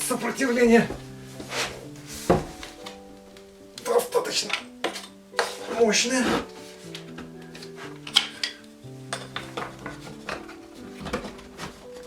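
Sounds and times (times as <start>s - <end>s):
background music: 0.0s - 12.0s.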